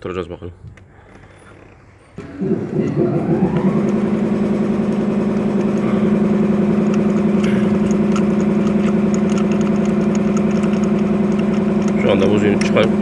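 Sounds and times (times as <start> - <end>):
car engine starting and idling: 0.9 - 13.0
light engine ticking: 3.4 - 13.0.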